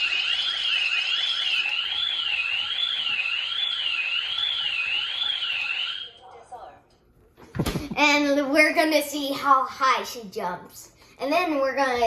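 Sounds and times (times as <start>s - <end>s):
electronic alarm siren warbling: 0.0s - 6.2s.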